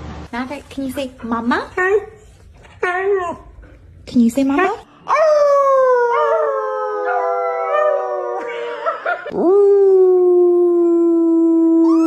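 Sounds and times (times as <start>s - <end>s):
dog howling: 5.1s - 12.0s.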